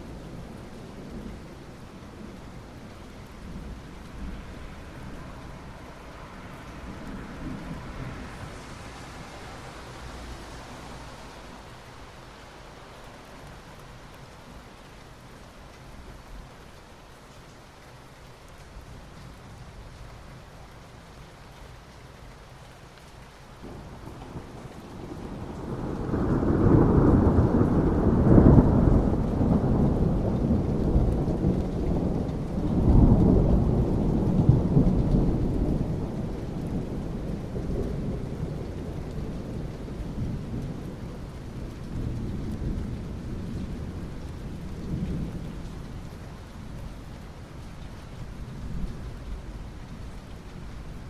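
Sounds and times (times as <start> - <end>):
rain falling on asphalt: 0.0 - 51.0
thunder rolling: 23.6 - 45.5.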